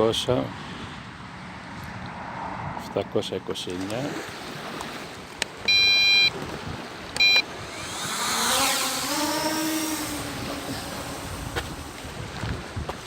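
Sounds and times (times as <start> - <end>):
short electronic beep: 5.7 - 6.3, 7.2 - 7.5.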